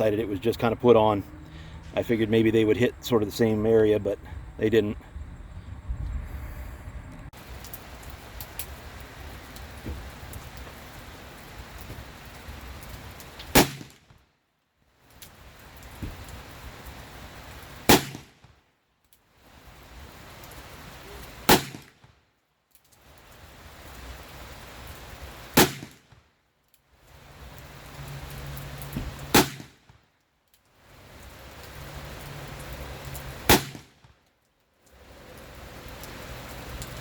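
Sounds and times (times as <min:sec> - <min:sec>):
revolver gunshots: 0:13.5 - 0:14.0, 0:17.9 - 0:18.4, 0:21.5 - 0:22.0, 0:25.6 - 0:26.0, 0:29.3 - 0:29.8, 0:33.5 - 0:34.0.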